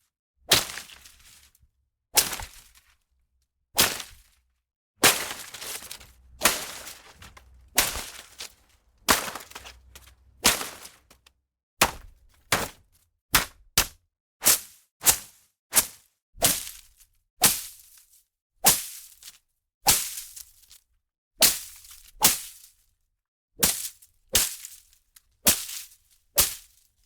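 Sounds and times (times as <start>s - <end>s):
foliage struck with swishing hits: 5.0s - 11.0s
leaves rustling: 5.0s - 11.2s.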